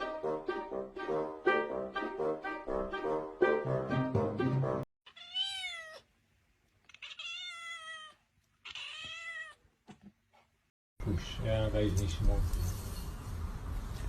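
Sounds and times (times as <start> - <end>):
cat meowing: 5.1 - 6.1, 6.8 - 9.6.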